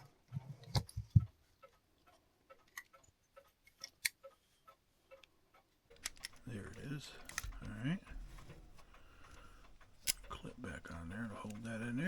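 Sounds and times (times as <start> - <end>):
light metallic clicks of clock parts: 5.9 - 12.0.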